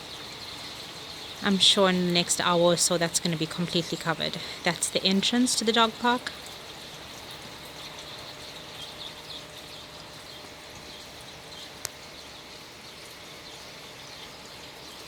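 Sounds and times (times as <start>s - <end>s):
rain and running floodwater: 0.0s - 15.0s.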